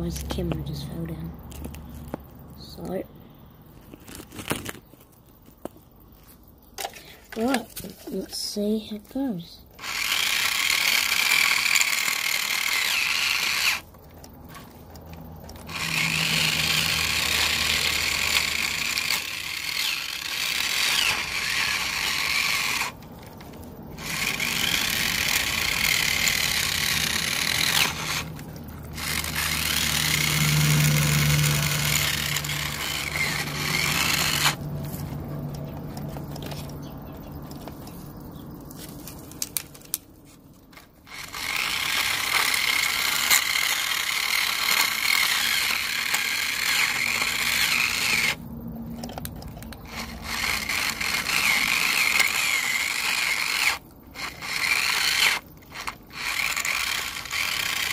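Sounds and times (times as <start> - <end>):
electric motor whining: 9.8 - 36.6, 41.0 - 57.9
wheels spinning in dirt: 9.8 - 39.5, 40.7 - 57.9.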